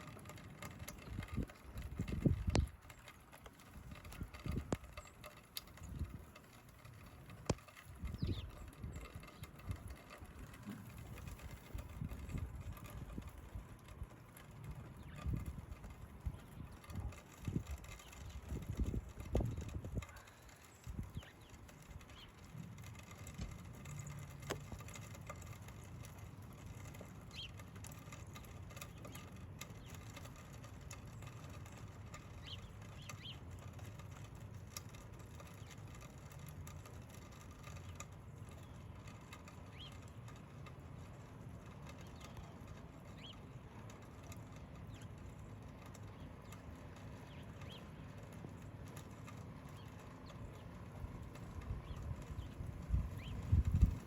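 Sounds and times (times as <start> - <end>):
wind rumble on microphone: 0.2 - 25.2, 47.2 - 54.0.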